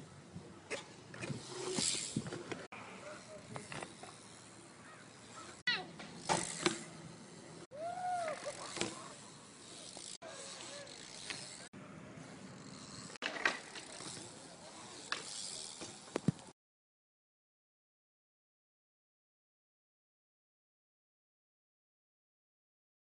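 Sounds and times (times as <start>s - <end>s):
bike clicks and knocks: 0.7s - 2.7s, 3.4s - 4.5s, 5.3s - 7.1s, 8.3s - 11.7s, 12.7s - 16.5s
ratcheting bike hub: 1.3s - 2.4s, 8.0s - 11.7s, 12.6s - 16.4s.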